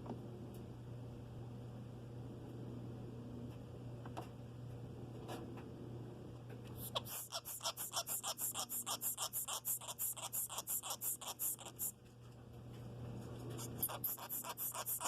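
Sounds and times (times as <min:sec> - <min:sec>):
sugar glider hissy clicks: 0:06.8 - 0:12.0, 0:13.6 - 0:15.0.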